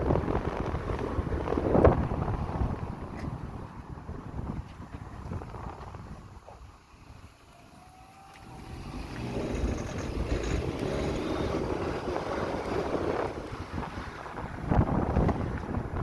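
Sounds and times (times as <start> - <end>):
wind noise on microphone: 0.0 - 16.0
car engine revving: 7.6 - 15.7.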